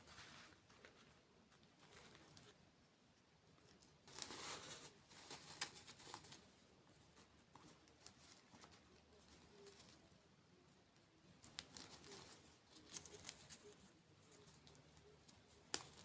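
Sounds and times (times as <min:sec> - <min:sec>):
crackling and crunching eating: 0:00.0 - 0:16.0.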